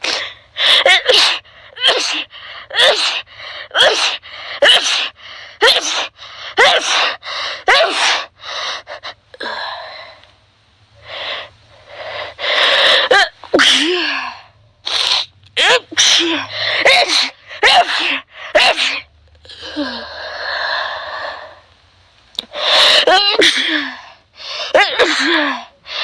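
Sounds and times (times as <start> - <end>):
person sneezing: 0.0 - 8.3, 12.4 - 20.1, 22.4 - 24.0, 24.6 - 26.0.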